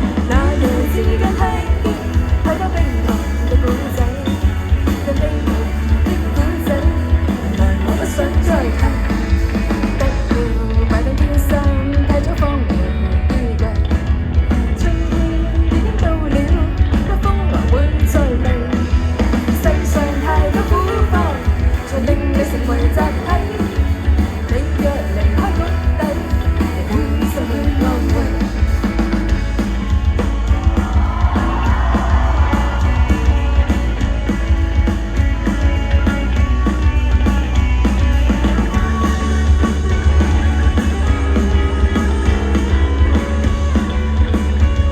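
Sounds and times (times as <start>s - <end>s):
person singing: 0.0s - 14.1s, 14.7s - 29.1s
live band playing: 0.0s - 44.9s.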